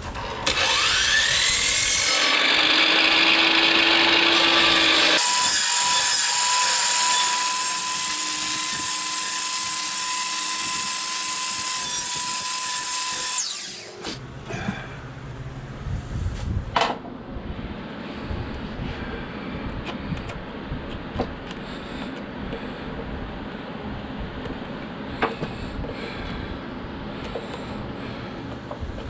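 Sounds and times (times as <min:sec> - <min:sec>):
power tool cutting wood: 0:00.0 - 0:14.2.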